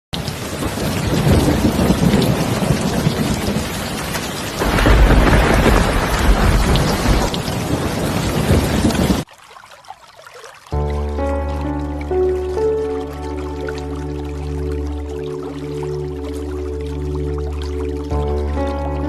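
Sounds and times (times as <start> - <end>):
heavy rain falling: 0.2 - 9.2
thunder rumbling: 0.2 - 9.2.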